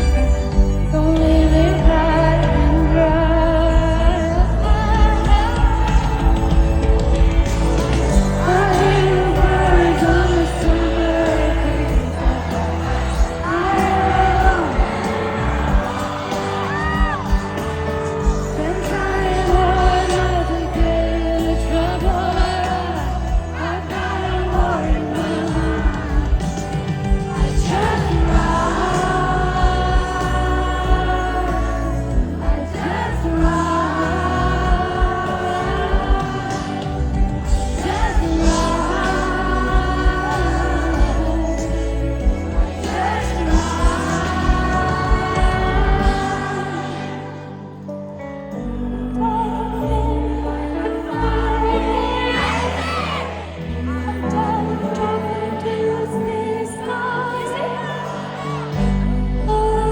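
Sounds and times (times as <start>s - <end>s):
heavy bass: 0.0s - 46.6s
woman singing: 0.0s - 47.6s, 48.5s - 59.9s
live pop band: 0.0s - 59.9s.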